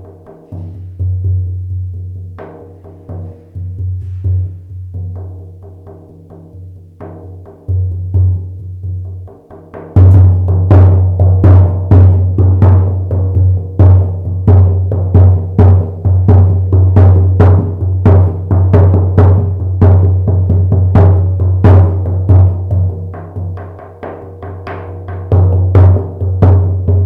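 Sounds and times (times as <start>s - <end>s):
frame drum booming strokes: 0.0s - 5.6s.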